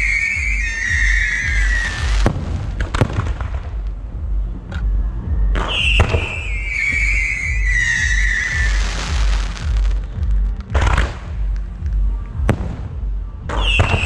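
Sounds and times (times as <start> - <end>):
whistling firework sliding down: 0.0 - 2.3, 5.7 - 9.2
fireworks cracking: 0.0 - 4.1, 5.6 - 14.0.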